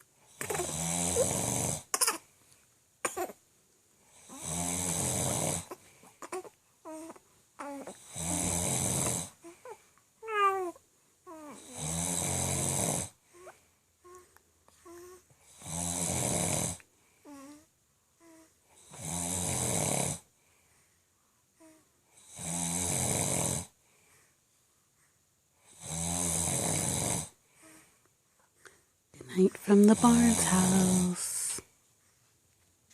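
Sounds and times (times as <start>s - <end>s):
man snoring loudly: 0.6s - 1.9s, 4.2s - 5.7s, 8.0s - 9.4s, 11.6s - 13.2s, 15.5s - 16.8s, 18.8s - 20.3s, 22.2s - 23.7s, 25.7s - 27.4s.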